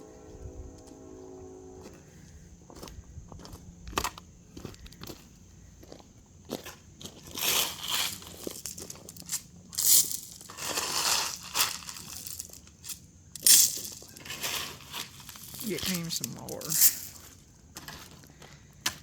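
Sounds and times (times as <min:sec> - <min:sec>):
gravel being scooped and dumped: 0:07.2 - 0:12.8, 0:13.4 - 0:18.2.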